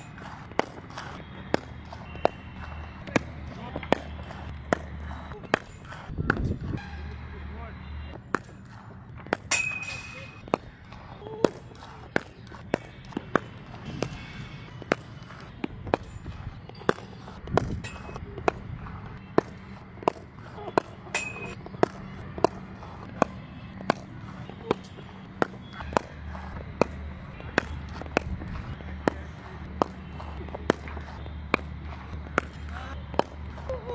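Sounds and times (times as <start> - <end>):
cricket ball striking wooden bat: 0.0 - 6.6, 9.2 - 10.8, 14.8 - 33.6.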